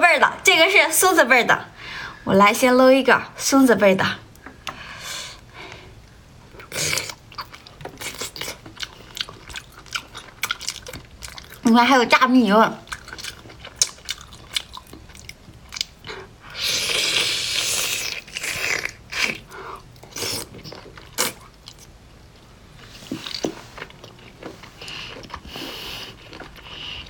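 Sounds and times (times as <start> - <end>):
person chewing and crunching food: 6.5 - 11.7, 12.8 - 22.0, 22.8 - 27.0.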